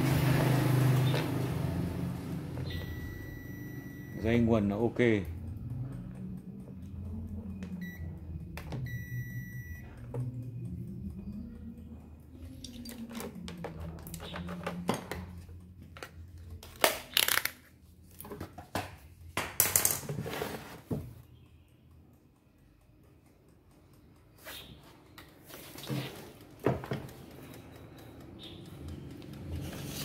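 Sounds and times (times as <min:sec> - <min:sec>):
continuity tester beep: 0:02.5 - 0:11.7.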